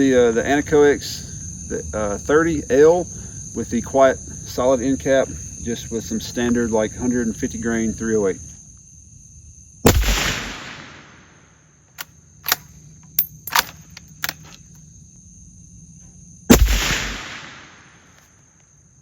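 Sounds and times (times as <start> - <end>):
suppressed rifle shots: 9.9 - 11.2, 16.5 - 18.0
rifle bolt metallic clicks: 11.9 - 14.8.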